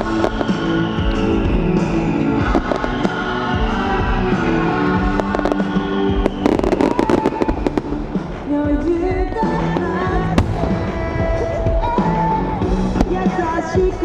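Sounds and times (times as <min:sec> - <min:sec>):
loud music: 0:00.0 - 0:08.5, 0:10.3 - 0:14.0
firework shells bursting and crackling: 0:10.2 - 0:13.8.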